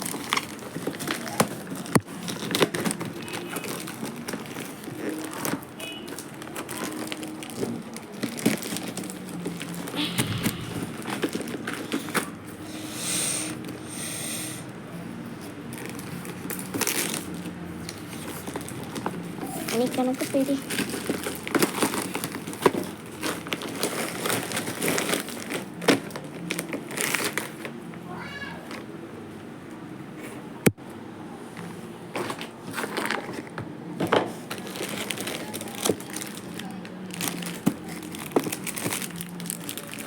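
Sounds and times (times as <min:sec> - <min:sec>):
plastic packaging crinkling: 0:00.0 - 0:12.3, 0:15.6 - 0:27.7, 0:34.5 - 0:40.0.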